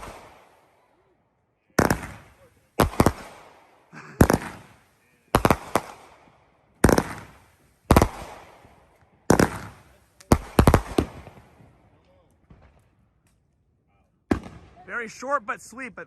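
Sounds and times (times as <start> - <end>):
firework cake bangs: 1.8 - 3.4, 4.1 - 11.7, 14.3 - 14.8.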